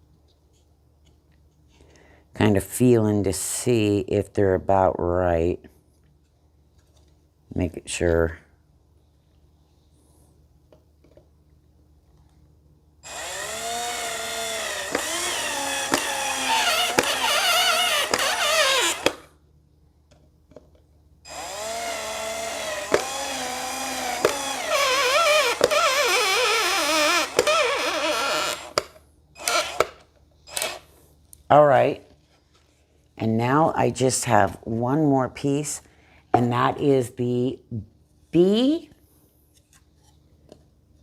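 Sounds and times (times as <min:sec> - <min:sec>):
electric drill running: 0:13.0 - 0:19.3, 0:21.3 - 0:30.9.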